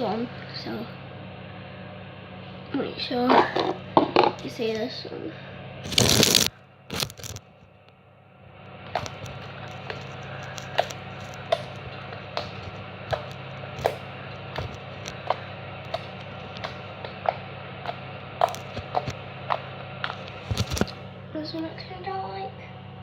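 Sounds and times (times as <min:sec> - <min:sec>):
steady low hum: 0:00.0 - 0:23.0
slime popping and crackling: 0:05.8 - 0:07.4, 0:09.0 - 0:14.0, 0:14.6 - 0:21.0.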